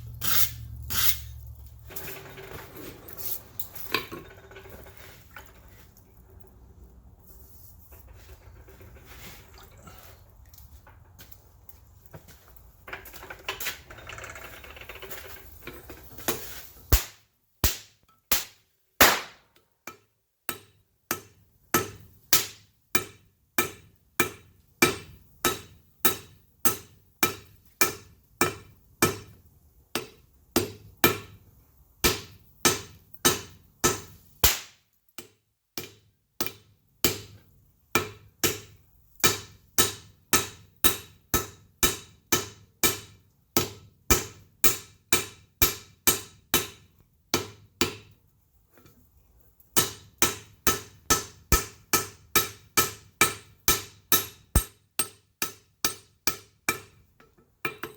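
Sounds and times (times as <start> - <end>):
hammer striking iron on anvil: 16.9 - 29.3, 29.9 - 31.4, 32.0 - 37.4, 38.0 - 48.1, 49.8 - 57.0, 57.6 - 57.9.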